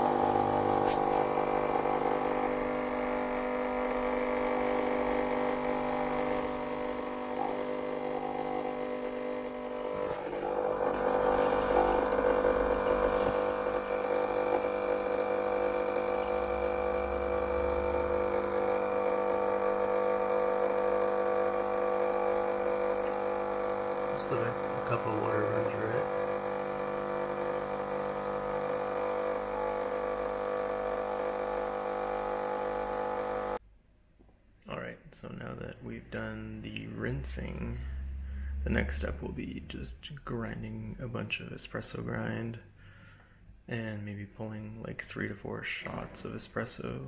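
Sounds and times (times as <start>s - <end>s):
espresso machine pump running: 0.0s - 33.6s.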